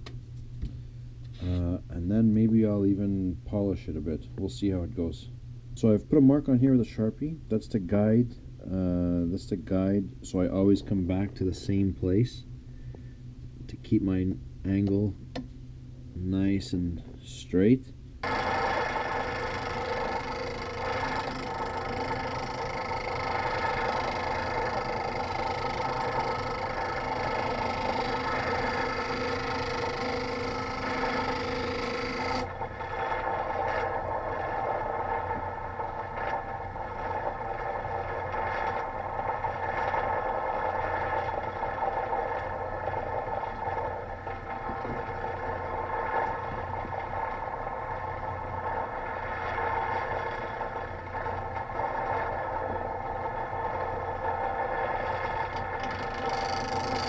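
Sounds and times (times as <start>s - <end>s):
bench grinder motor running: 18.2s - 34.4s, 55.2s - 57.0s.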